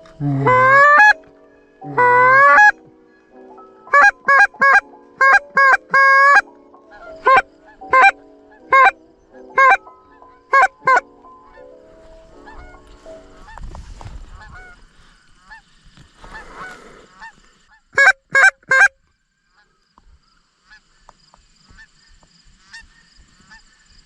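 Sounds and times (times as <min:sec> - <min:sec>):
geese honking: 0:00.0 - 0:01.2, 0:01.8 - 0:02.8, 0:03.7 - 0:13.6, 0:14.3 - 0:18.9.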